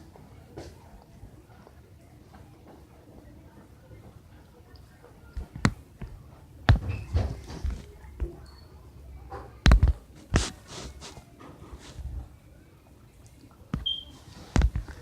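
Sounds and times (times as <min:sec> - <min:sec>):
soft scraping: 0:10.2 - 0:12.3.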